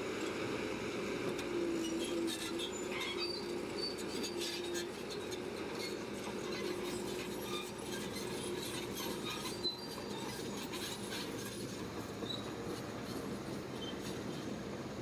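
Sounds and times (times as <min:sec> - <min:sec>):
diesel engine drone: 0:00.0 - 0:15.0
metal tracks clanking and squealing: 0:01.8 - 0:14.9.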